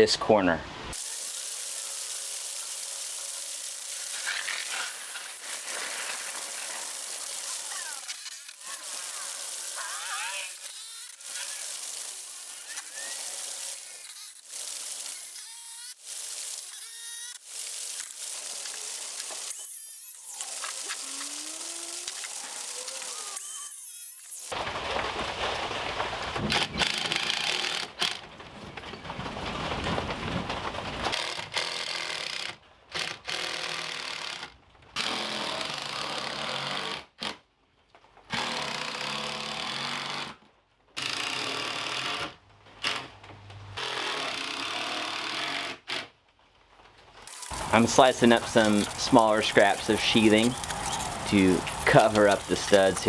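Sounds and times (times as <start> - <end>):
power tools on wood: 0.9 - 24.6, 31.1 - 37.4, 38.3 - 40.4, 43.8 - 46.0, 47.3 - 53.0.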